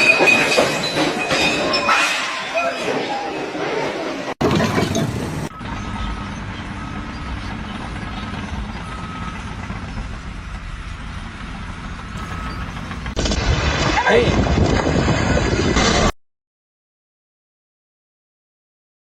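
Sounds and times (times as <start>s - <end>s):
heavy vehicle engine running: 4.4s - 13.9s
faint reversing beep: 5.5s - 7.5s, 8.2s - 11.0s, 11.9s - 13.0s.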